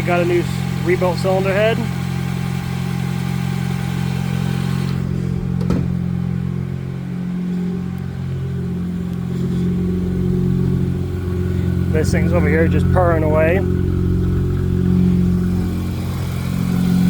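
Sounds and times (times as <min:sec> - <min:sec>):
car engine idling: 0:00.0 - 0:17.0
engine knock: 0:09.8 - 0:17.0.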